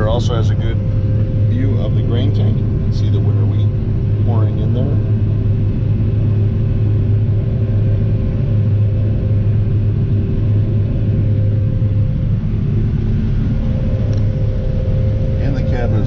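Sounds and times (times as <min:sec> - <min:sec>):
combine engine and machinery drone: 0:00.0 - 0:16.0
steady hums: 0:00.0 - 0:16.0.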